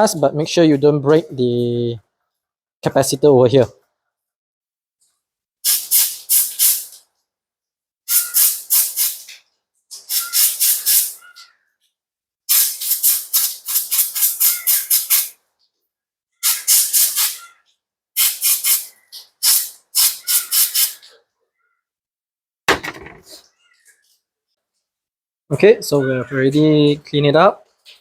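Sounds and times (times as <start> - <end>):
compressed air hissing squirts: 5.6 - 7.0, 8.1 - 11.2, 12.5 - 15.4, 16.4 - 17.5, 18.2 - 21.1.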